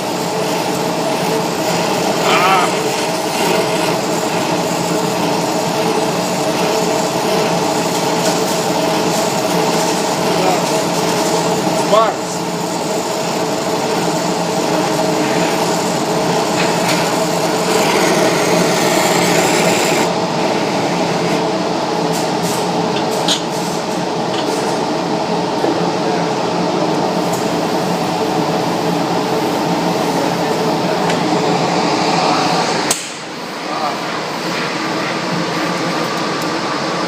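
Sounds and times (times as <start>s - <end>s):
welding torch flame hissing: 0.0s - 24.8s
mechanical hum: 0.0s - 37.0s.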